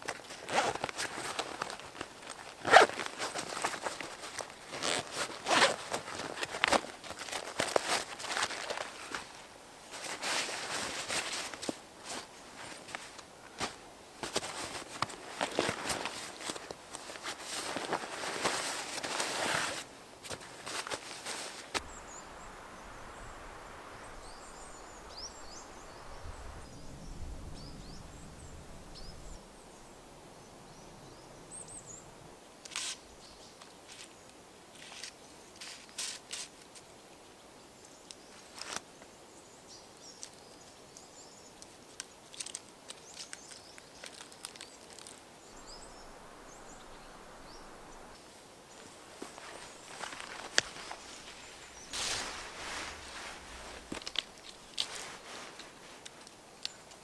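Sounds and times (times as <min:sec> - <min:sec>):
small birds chirping: 0:21.7 - 0:33.6, 0:42.9 - 0:55.2
sharp clicks and rustles: 0:49.2 - 0:57.0.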